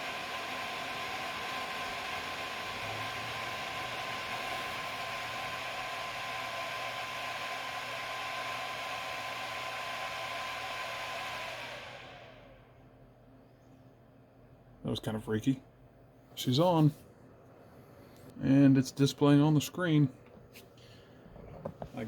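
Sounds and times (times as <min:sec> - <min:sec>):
computer fans whooshing: 0:00.0 - 0:12.6.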